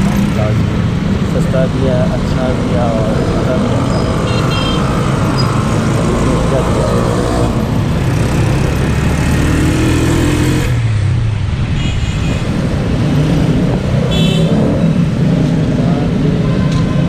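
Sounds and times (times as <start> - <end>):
road traffic: 0.0 - 17.0
vehicle horn toot: 4.3 - 4.9, 14.1 - 14.5.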